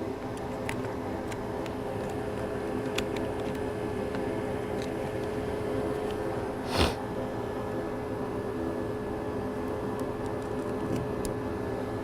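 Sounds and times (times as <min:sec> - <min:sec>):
electric fan motor humming: 0:00.0 - 0:12.0
small parts clicking and tapping: 0:00.2 - 0:05.4.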